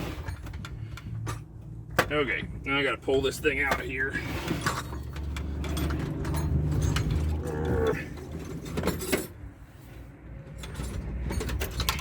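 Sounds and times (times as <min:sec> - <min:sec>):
man straining groans: 0:07.3 - 0:08.3.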